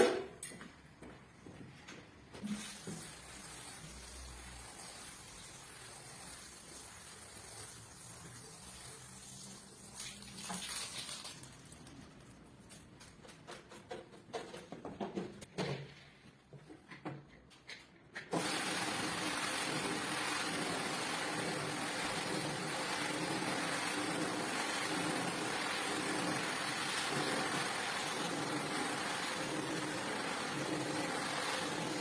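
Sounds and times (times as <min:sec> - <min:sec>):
water running faintly: 0:02.4 - 0:12.3
loud steady machine noise: 0:18.4 - 0:32.0.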